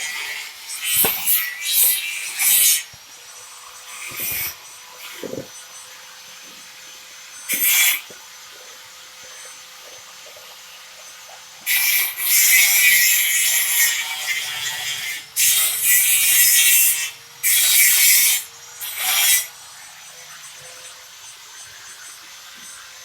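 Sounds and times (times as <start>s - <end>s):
screwdriver scraping metal can lid: 0.8s - 2.7s.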